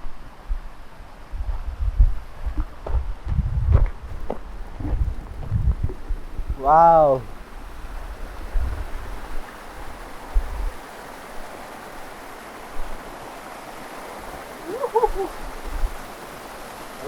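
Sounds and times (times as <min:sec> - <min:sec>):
thumps on microphone: 0:02.0 - 0:06.6
waterfall rushing: 0:04.1 - 0:17.0.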